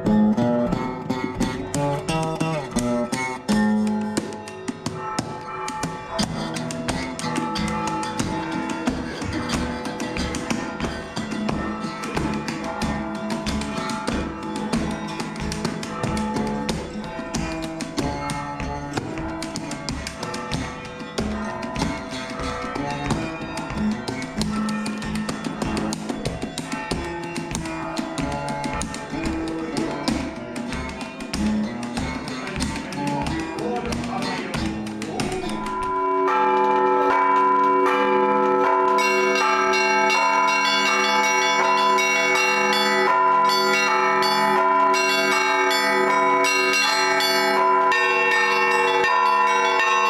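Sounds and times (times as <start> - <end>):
low bell steady beat: 0.0 - 50.0
small church bells striking quickly: 0.0 - 50.0
sustained ringing of middle bells: 4.2 - 30.4, 35.1 - 50.0
low bell strokes: 35.4 - 50.0.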